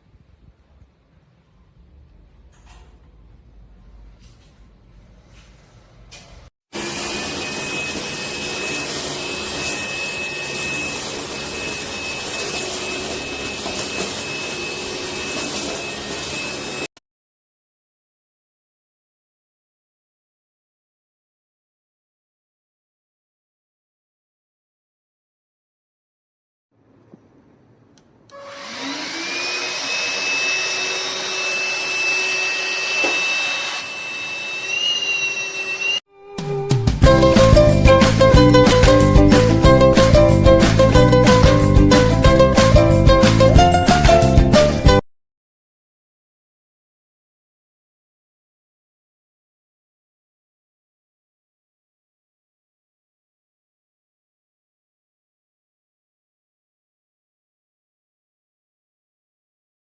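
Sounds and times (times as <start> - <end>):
vacuum cleaner running: 6.7 - 16.9, 28.3 - 36.1.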